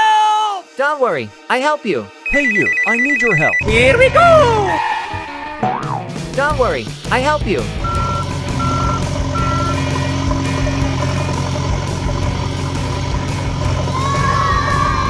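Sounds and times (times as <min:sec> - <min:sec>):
reversing alarm beeps: 0:02.3 - 0:04.8, 0:07.8 - 0:10.2
engine hum: 0:03.6 - 0:04.8, 0:06.2 - 0:15.0.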